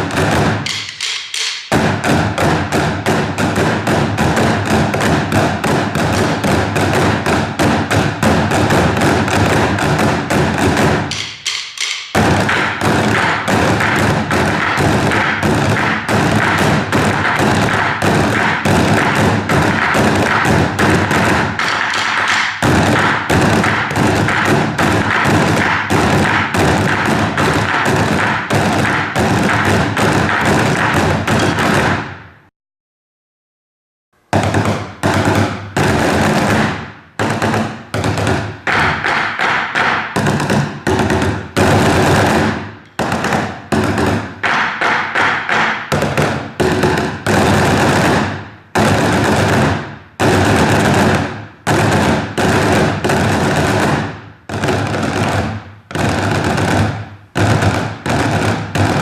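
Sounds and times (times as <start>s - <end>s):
percussion ensemble drumming: 0.0s - 32.0s.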